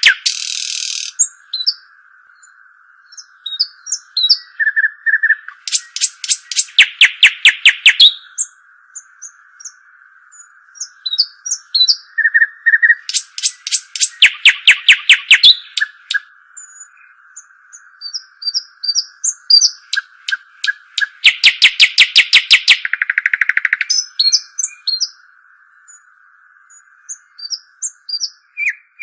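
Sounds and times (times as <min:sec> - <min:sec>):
short high bird chirps: 0:00.0 - 0:01.8, 0:03.5 - 0:08.3, 0:10.8 - 0:16.9, 0:18.0 - 0:25.1, 0:27.4 - 0:29.0
songbird trills: 0:00.0 - 0:29.0
steady high-pitched hiss: 0:00.0 - 0:29.0.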